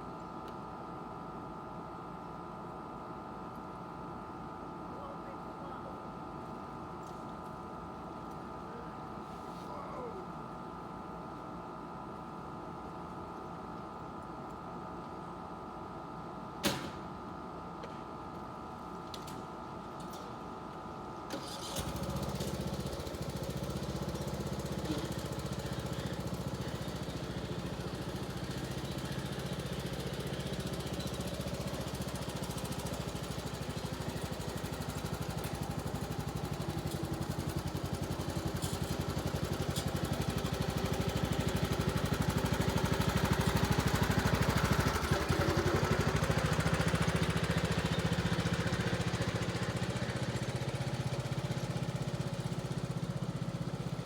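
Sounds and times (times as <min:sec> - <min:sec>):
lawn mower engine running: 0:21.3 - 0:54.0.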